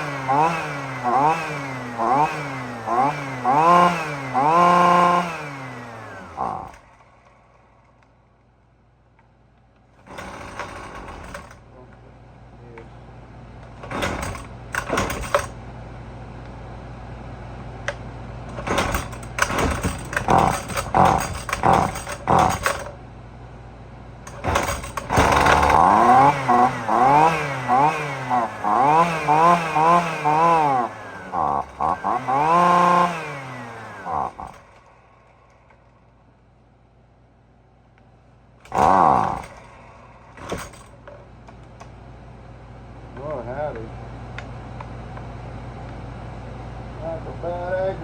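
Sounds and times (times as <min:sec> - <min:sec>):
string trimmer engine revving: 0:00.0 - 0:07.4, 0:10.0 - 0:11.6, 0:18.5 - 0:23.0, 0:24.3 - 0:34.9, 0:38.6 - 0:40.9.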